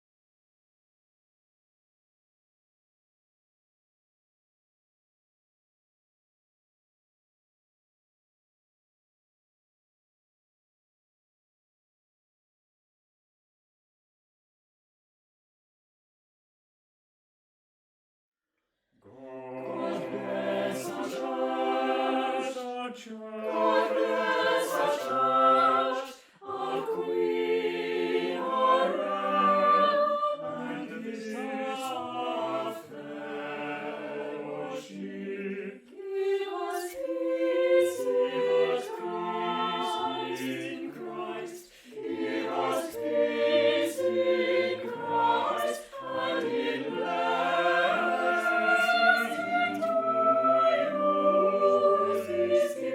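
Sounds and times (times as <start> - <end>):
choir singing: 19.0 - 52.9.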